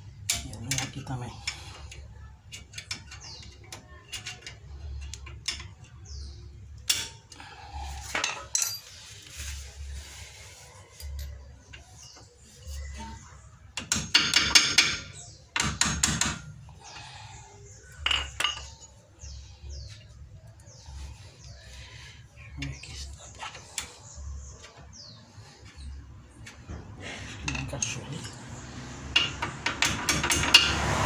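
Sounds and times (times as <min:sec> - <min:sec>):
metal brake parts clinking: 0:08.0 - 0:09.3, 0:18.0 - 0:19.0.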